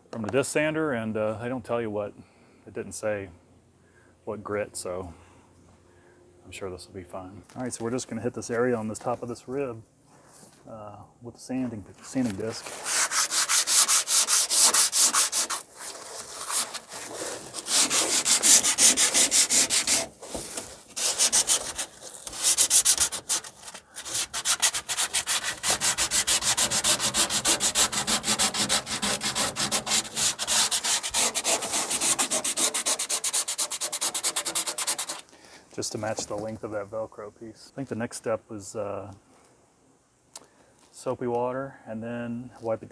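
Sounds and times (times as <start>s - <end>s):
sanding disc rubbing by hand: 12.1s - 35.2s.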